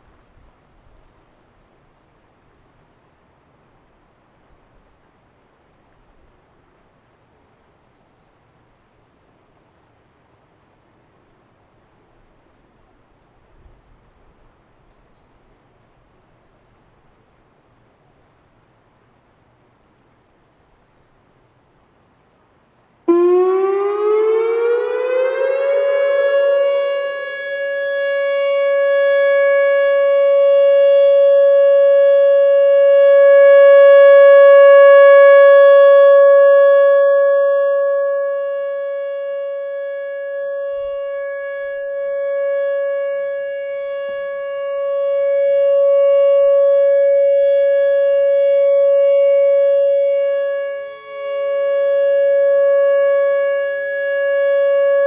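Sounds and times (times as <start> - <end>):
outdoor warning siren: 23.1 - 55.0.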